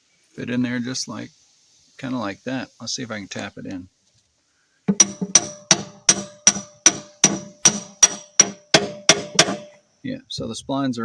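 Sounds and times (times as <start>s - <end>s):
hammer striking steel lever: 4.9s - 9.8s.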